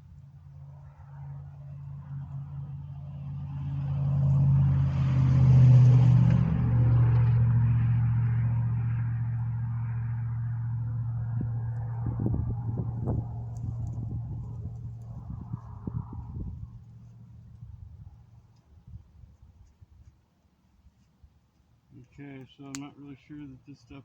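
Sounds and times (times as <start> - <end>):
vehicle engine passing: 0.2 - 18.4.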